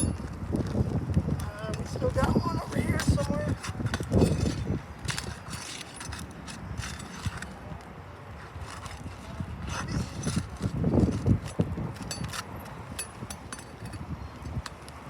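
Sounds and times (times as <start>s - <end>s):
scraping on roof shingles: 2.6s - 7.6s.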